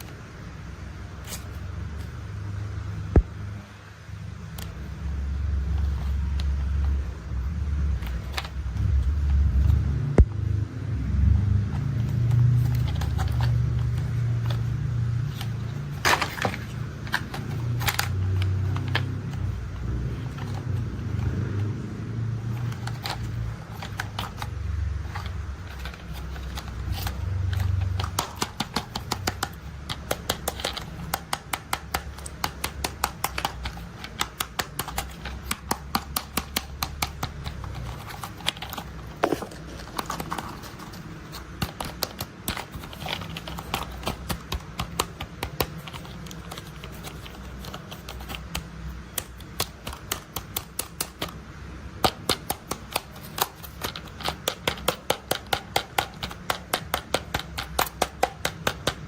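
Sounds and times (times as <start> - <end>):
plastic toy parts clicking and rattling: 12.0 - 21.3, 22.4 - 51.4, 52.0 - 59.0.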